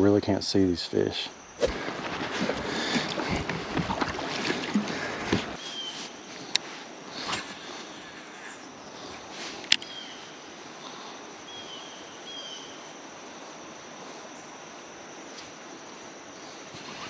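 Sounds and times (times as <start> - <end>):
river water rushing: 1.4 - 5.6.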